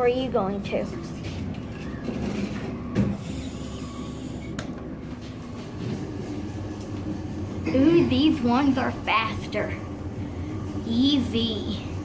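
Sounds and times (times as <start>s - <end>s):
elevator hum and rumble: 0.0s - 12.0s.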